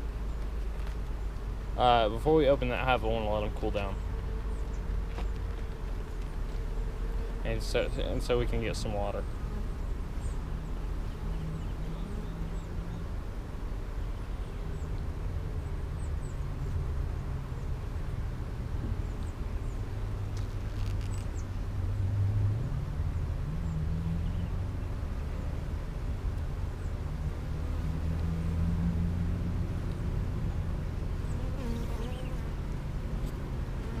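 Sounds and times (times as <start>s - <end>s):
small birds chirping: 0.0s - 6.3s, 7.1s - 13.2s, 31.2s - 32.5s
honeybees buzzing: 0.0s - 21.7s, 25.3s - 34.0s
faint drone: 0.0s - 34.0s
low outdoor rumble: 0.0s - 34.0s.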